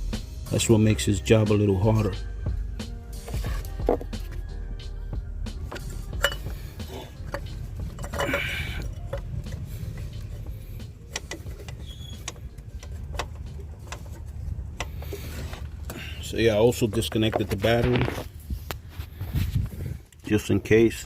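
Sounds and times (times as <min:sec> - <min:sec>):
steady low rumble: 0:03.9 - 0:21.0
light clicks and knocks of parts: 0:05.6 - 0:20.8.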